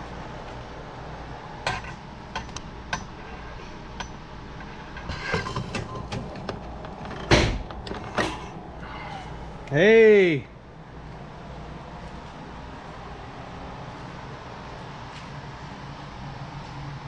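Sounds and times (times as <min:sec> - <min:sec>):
hood release clicks and rattles: 0:05.0 - 0:08.6.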